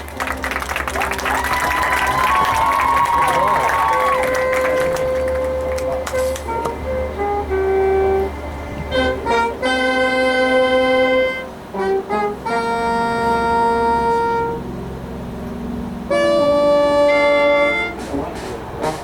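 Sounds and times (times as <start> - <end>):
short quick notes: 0.0 - 9.8
marching band brass chords: 0.0 - 14.6, 16.1 - 19.0.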